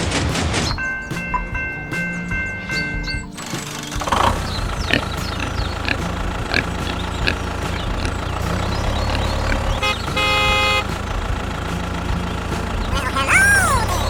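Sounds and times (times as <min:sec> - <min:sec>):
engine running: 0:03.4 - 0:14.0.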